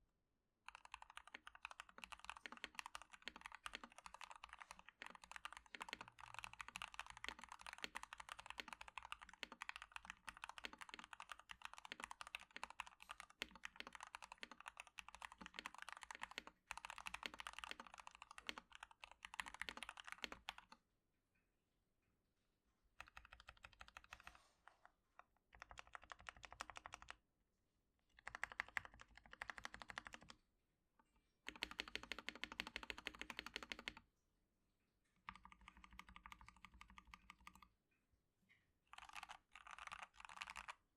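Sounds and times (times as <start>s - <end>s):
mechanical keyboard typing: 0.7s - 20.8s, 23.0s - 24.4s, 25.5s - 27.2s, 28.2s - 30.4s, 31.5s - 34.0s, 35.2s - 37.7s, 38.9s - 40.8s.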